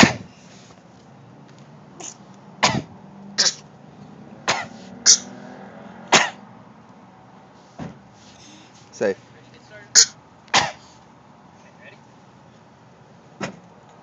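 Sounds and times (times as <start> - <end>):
short sharp coughs: 2.0 - 3.6, 4.5 - 5.3, 6.1 - 6.4, 10.0 - 10.9.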